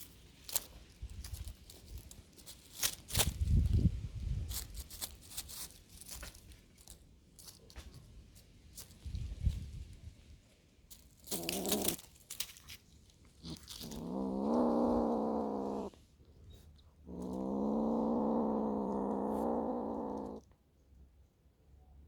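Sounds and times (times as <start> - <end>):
cat calling: 13.4 - 16.0, 17.0 - 20.4.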